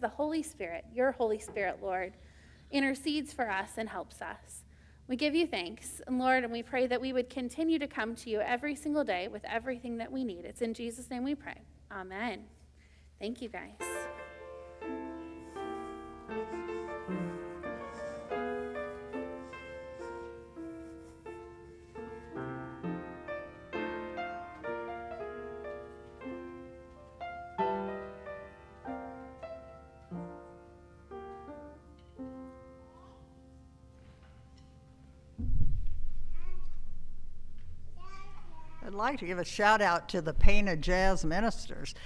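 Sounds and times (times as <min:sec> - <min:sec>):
gentle piano playing: 0:13.8 - 0:35.4.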